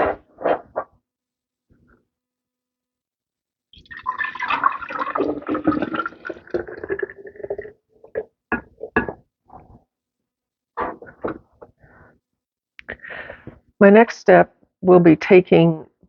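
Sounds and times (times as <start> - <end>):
drips and splashes: 3.8 - 7.7
liquid pouring from squeezed herbs: 3.8 - 7.8.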